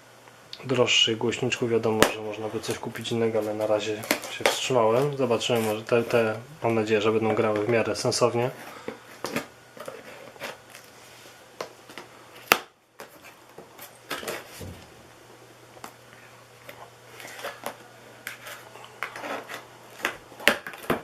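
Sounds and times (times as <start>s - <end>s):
cardboard packaging rustling: 2.3s - 6.4s, 7.3s - 15.0s.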